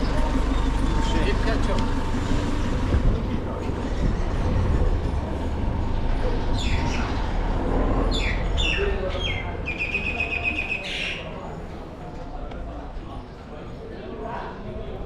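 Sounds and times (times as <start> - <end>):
steady low rumble: 0.0 - 9.8
small birds chirping: 8.0 - 11.3.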